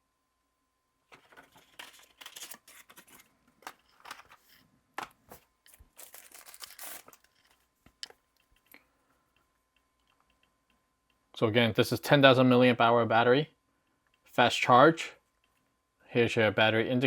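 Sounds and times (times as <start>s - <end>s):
plastic wrapping crinkling and tearing: 5.7s - 7.5s.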